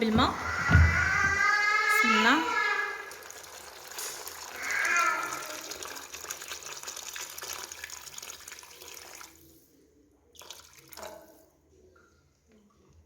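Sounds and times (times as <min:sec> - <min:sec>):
short knock: 0:00.1 - 0:01.4
water pouring into a pot: 0:02.2 - 0:09.7, 0:10.3 - 0:11.4.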